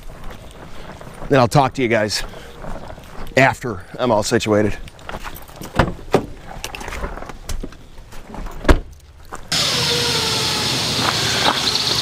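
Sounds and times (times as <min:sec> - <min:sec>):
knocks and thumps of gear: 0:05.0 - 0:09.5.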